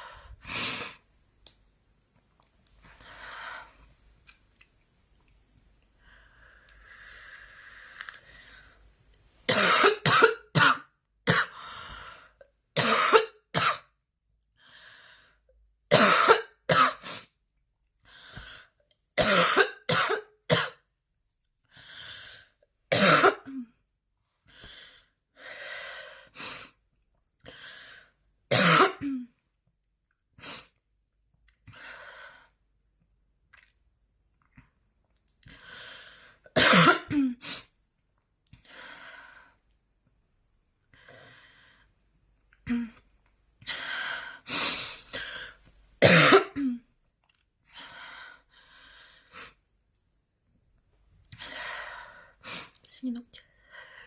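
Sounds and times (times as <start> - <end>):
quiet breaths: 5.8 - 9.3, 51.2 - 54.0
woman coughing hard: 9.5 - 11.6, 12.8 - 13.9, 15.9 - 17.0, 19.2 - 20.8, 22.9 - 23.7, 28.5 - 29.3, 36.6 - 37.4, 46.0 - 46.8.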